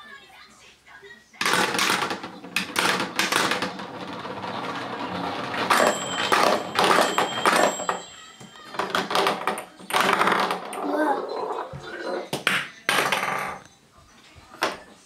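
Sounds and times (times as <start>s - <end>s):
plastic balls clattering on tracks: 1.4s - 11.0s
chimes ringing: 5.1s - 9.7s.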